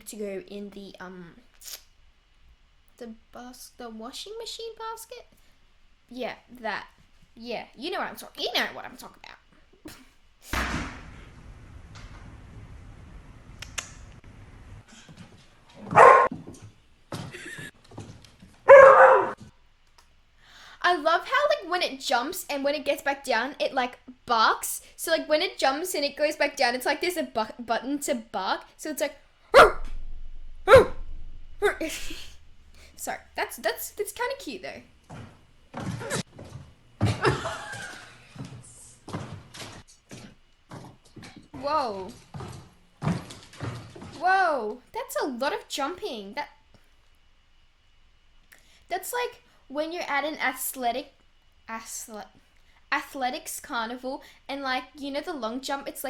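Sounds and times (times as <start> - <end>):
thuds and knocks: 10.5 - 13.4, 38.4 - 44.2
animal yelping: 15.8 - 16.3, 18.7 - 19.4, 29.6 - 29.8, 30.7 - 31.0
dog barking: 15.8 - 16.3, 18.7 - 19.4, 29.6 - 29.9, 30.7 - 31.0.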